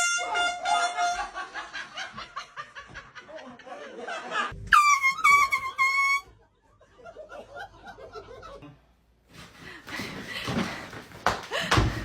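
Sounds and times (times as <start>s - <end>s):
air horn bursts: 0.0s - 1.4s
people chuckling: 6.5s - 8.8s.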